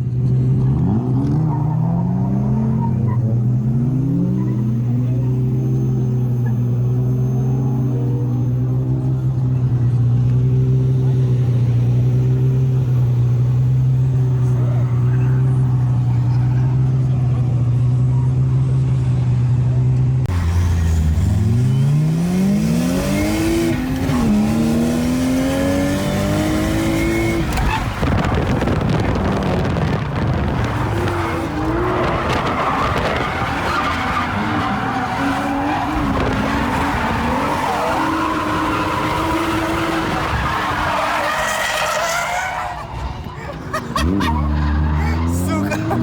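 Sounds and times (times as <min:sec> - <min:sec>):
car engine revving: 0:00.0 - 0:46.0
tyres screeching: 0:30.5 - 0:46.0.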